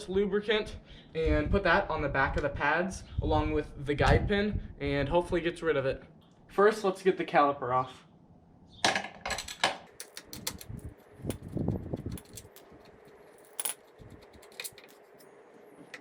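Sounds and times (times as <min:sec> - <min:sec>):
metallic tool clicks and clinks: 0:10.0 - 0:15.2.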